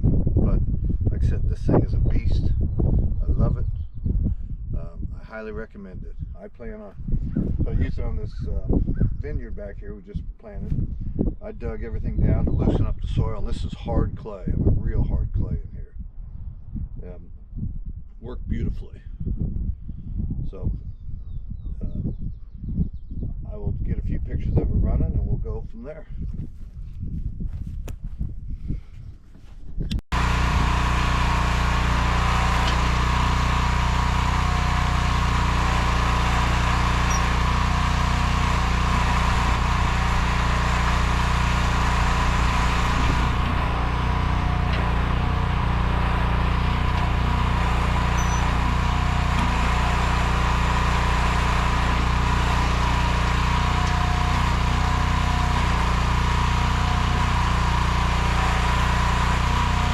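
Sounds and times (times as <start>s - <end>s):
gasoline engine running steadily: 30.1s - 59.9s.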